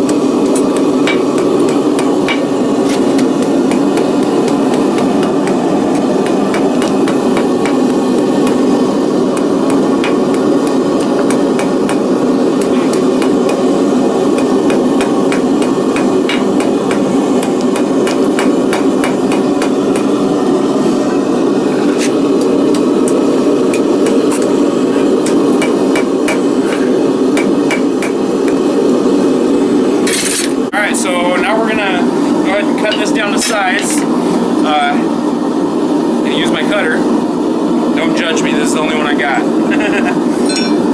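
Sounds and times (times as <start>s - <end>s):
hammer blows on hot steel: 0.0s - 28.9s
forge roaring: 0.0s - 40.9s.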